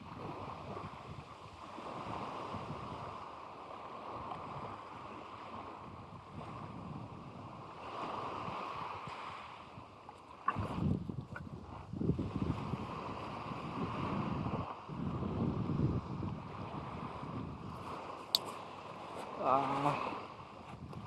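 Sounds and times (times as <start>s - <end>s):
sea waves washing onto beach: 0.0s - 21.0s
wind gusting against microphone: 0.0s - 21.0s.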